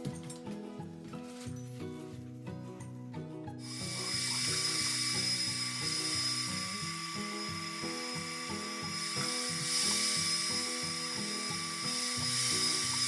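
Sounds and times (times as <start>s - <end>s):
background music: 0.0s - 13.0s
hiss of noise: 3.6s - 13.0s
power tool whining: 3.6s - 13.0s.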